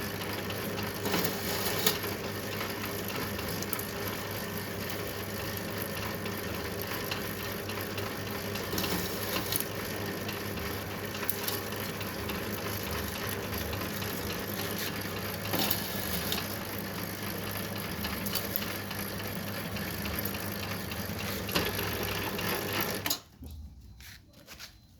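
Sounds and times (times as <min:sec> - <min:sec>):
shaving machine humming: 0:14.0 - 0:23.0.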